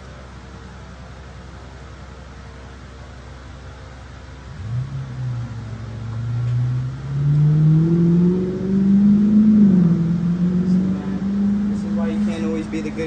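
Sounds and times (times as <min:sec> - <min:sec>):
vehicle engine revving: 0:04.4 - 0:13.0.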